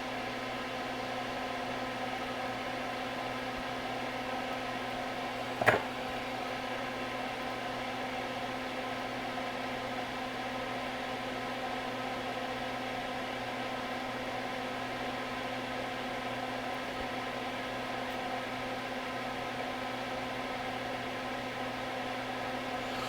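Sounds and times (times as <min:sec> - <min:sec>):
fan whirring hum: 0:00.0 - 0:07.9, 0:14.4 - 0:23.0.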